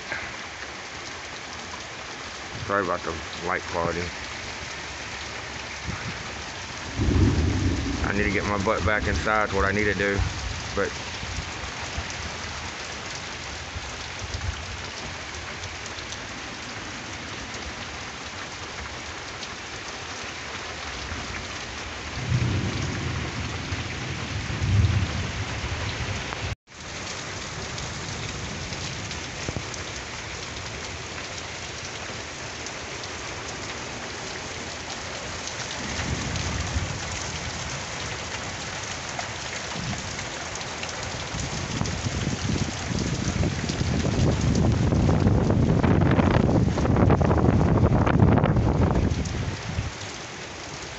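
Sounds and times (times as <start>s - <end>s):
heavy rain falling: 0.0s - 50.9s
thunder rumbling: 6.8s - 11.5s, 22.2s - 26.2s, 41.2s - 49.2s.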